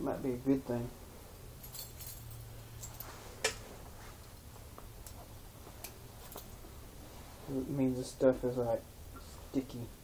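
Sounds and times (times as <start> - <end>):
faint low hum: 0.0 - 10.0
key and bottle clinking: 1.6 - 3.1.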